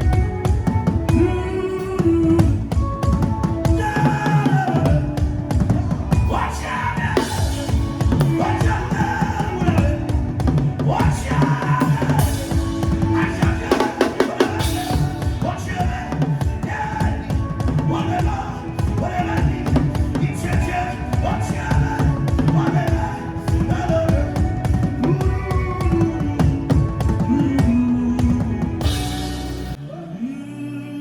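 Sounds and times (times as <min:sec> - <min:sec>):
gliding melody: 0:00.0 - 0:31.0
fast dense drumming: 0:07.0 - 0:29.8.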